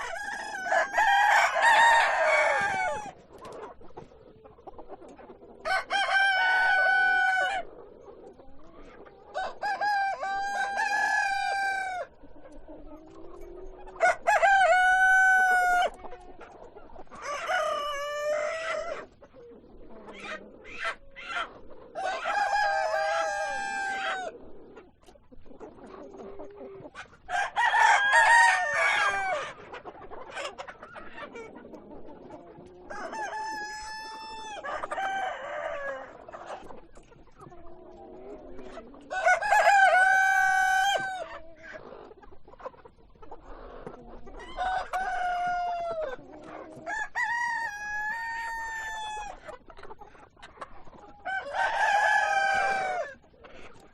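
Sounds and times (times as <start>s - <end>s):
rooster crowing: 0.0s - 3.1s, 5.6s - 7.6s, 14.0s - 15.9s, 27.3s - 29.4s, 39.1s - 41.2s
hens clucking: 0.0s - 53.9s.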